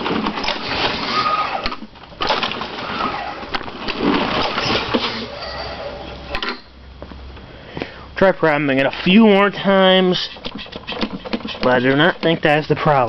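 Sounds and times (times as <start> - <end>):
mower engine turning over: 0.0 - 5.4.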